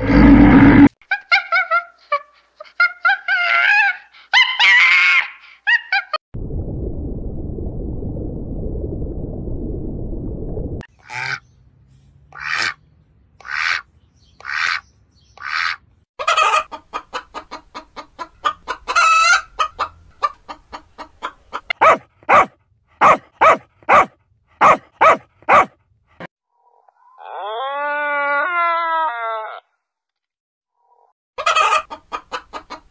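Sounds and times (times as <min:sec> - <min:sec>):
chicken clucking and cackling: 0:01.1 - 0:04.1, 0:15.4 - 0:21.8, 0:30.8 - 0:32.9.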